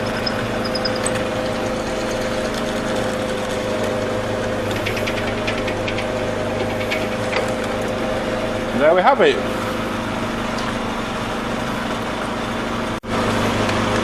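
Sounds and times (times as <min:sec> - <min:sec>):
mortise machine motor hum: 0:00.0 - 0:14.0.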